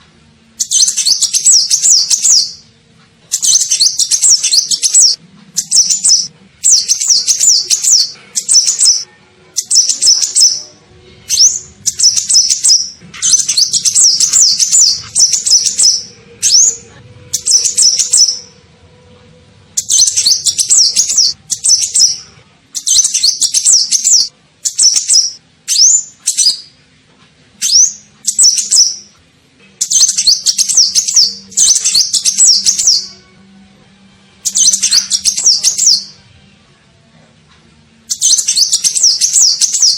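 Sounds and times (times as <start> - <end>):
high bird twittering: 0.6 - 2.7, 3.3 - 10.7, 11.3 - 18.6, 19.8 - 22.2, 22.8 - 26.7, 27.6 - 29.1, 29.8 - 33.2, 34.5 - 36.2, 38.1 - 39.9.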